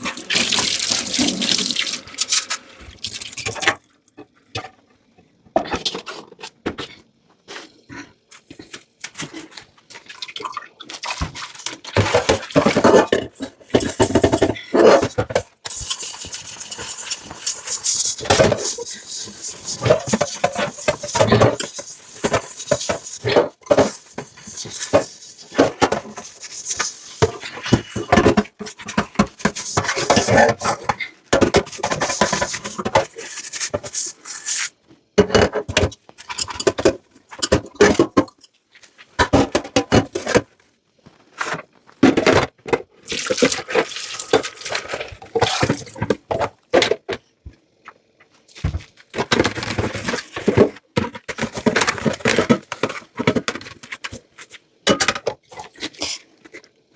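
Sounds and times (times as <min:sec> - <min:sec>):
water splashing and running: 0:00.0 - 0:03.7.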